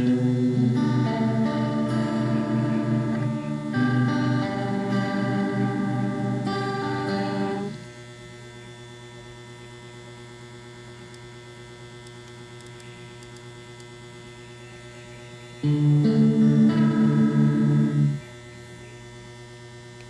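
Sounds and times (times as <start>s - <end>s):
electric guitar with harmonizer: 0.0s - 7.9s, 15.6s - 18.4s
mains hum from guitar amp: 0.0s - 20.0s.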